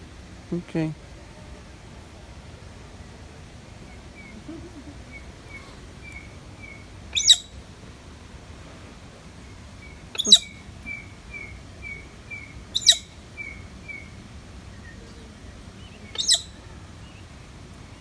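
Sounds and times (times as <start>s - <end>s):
bird giving loud calls: 5.0s - 13.6s.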